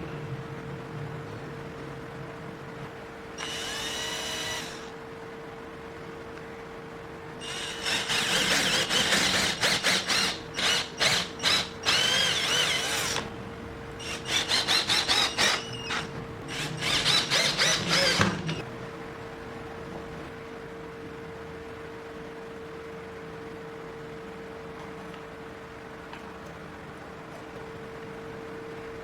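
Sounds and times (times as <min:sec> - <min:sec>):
electric drill grinding metal: 0:03.4 - 0:05.0, 0:07.4 - 0:13.3, 0:14.0 - 0:18.6.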